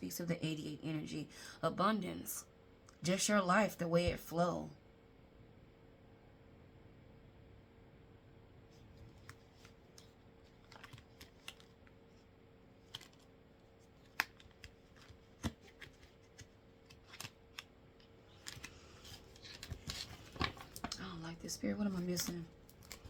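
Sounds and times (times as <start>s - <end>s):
cards shuffling: 9.0s - 12.2s, 12.8s - 21.1s, 21.8s - 23.0s.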